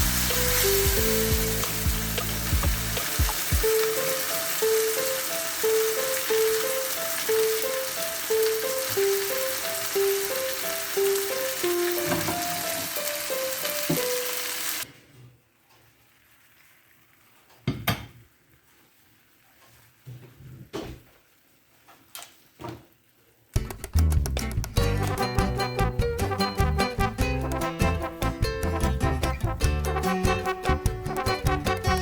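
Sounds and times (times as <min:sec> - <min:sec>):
background music: 0:00.0 - 0:14.8, 0:23.6 - 0:32.0
meat sizzling in a frying pan: 0:00.0 - 0:14.9.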